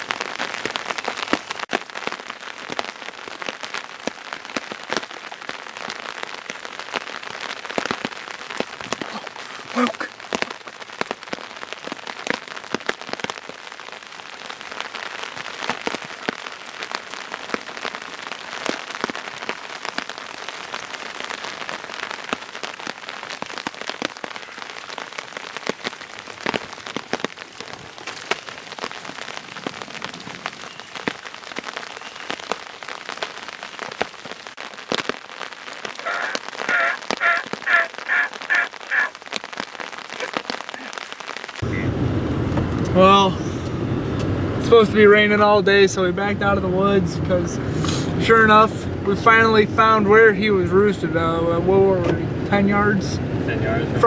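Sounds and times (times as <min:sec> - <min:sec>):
steady rain falling: 0:00.0 - 0:54.0
bird calling short notes: 0:36.0 - 0:39.1.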